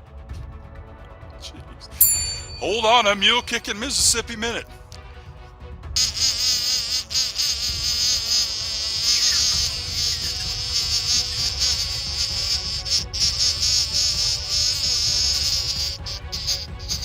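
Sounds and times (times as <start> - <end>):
insect-like buzzing: 6.0 - 17.0.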